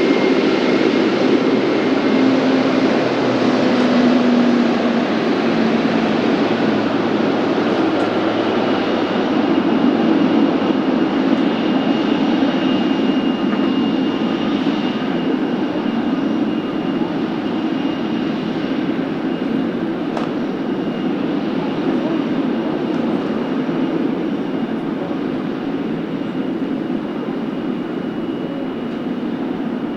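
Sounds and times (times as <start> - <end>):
jet engines rumbling: 0.0 - 29.9.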